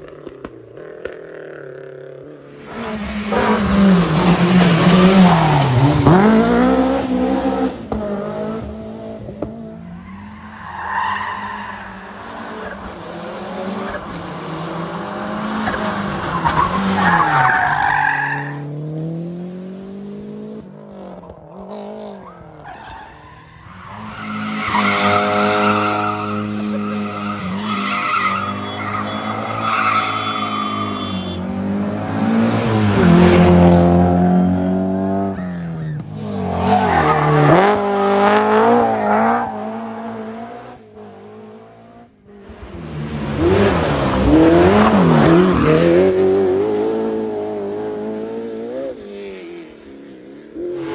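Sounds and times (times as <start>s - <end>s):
rally car engines revving: 0.0s - 50.9s
tyre squeal: 22.7s - 31.5s.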